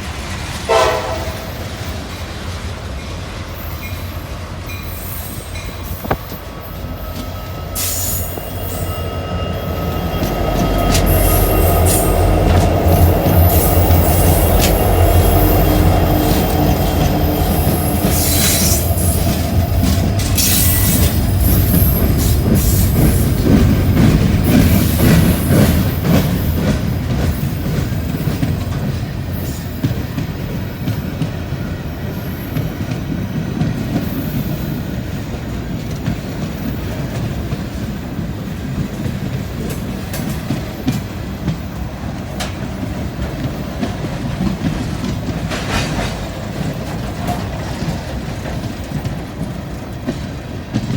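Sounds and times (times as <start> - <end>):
freight train rumbling: 0.0 - 50.9
train wheels squealing: 3.5 - 35.4
wheels clicking over rail joints: 10.1 - 50.9.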